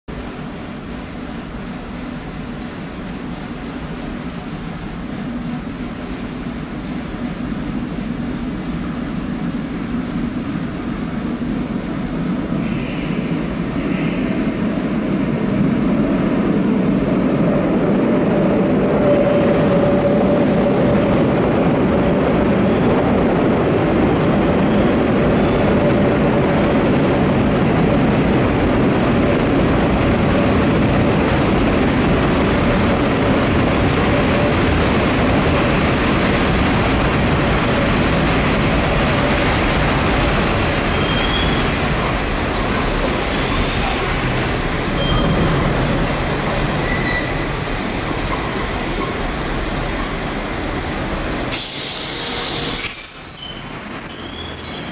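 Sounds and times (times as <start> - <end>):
wheels rumbling on rail: 0.1 - 54.9
faint thin squeal: 40.9 - 41.7, 45.0 - 45.4, 46.8 - 47.5, 48.4 - 54.9.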